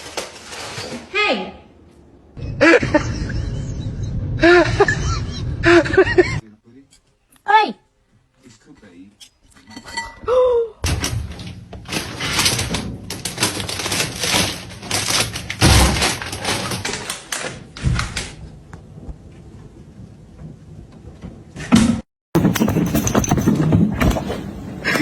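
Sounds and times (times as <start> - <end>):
knocks thuds and clatter: 10.8 - 17.1, 20.3 - 24.6.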